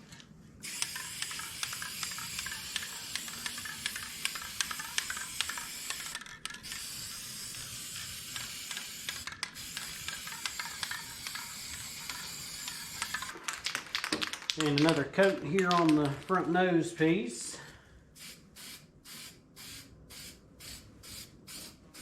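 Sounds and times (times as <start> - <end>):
spray paint hissing: 0.6 - 13.4, 18.2 - 22.0.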